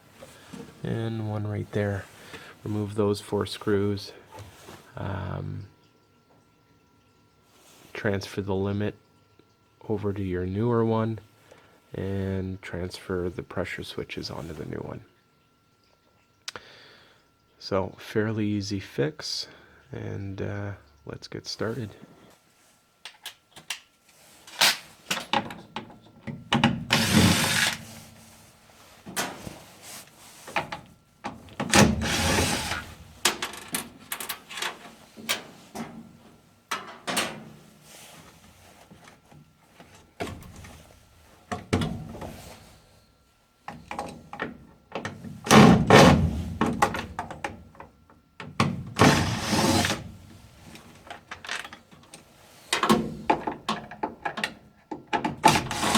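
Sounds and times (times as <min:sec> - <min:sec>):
cordless drill running: 0:26.9 - 0:27.8.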